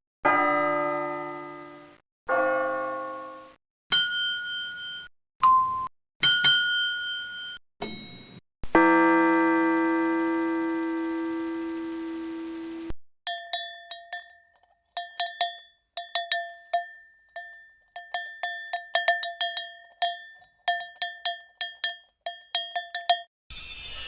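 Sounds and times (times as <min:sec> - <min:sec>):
struck metal bell strokes: 0:13.3 - 0:23.3.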